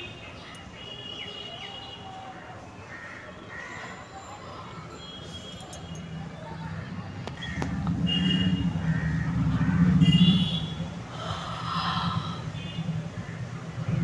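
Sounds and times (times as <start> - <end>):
person breathing: 4.4 - 5.0, 11.1 - 12.6
person yawning: 11.1 - 12.5.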